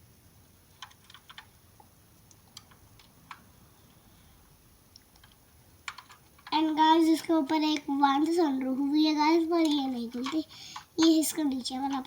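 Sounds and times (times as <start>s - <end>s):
toy car clicks and taps: 5.2s - 6.6s, 9.5s - 12.0s.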